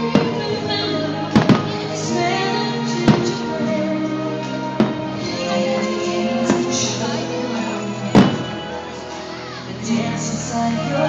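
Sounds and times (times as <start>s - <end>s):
fireworks bangs: 0.0s - 0.6s, 1.3s - 1.9s, 8.1s - 8.6s
orchestral music: 0.0s - 11.0s.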